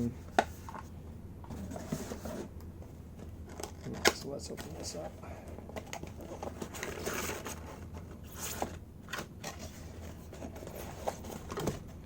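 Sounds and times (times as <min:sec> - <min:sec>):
packaging scrapes and rustles: 0:05.9 - 0:08.8.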